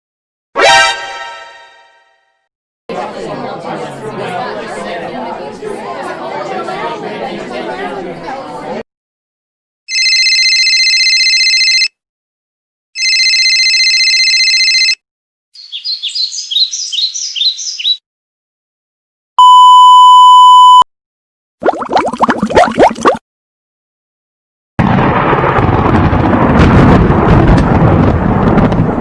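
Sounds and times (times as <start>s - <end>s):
telephone ringing: 9.9s - 11.9s, 13.0s - 15.0s
rapid high bird chirps: 15.6s - 18.0s
pure steady beep: 19.4s - 20.9s.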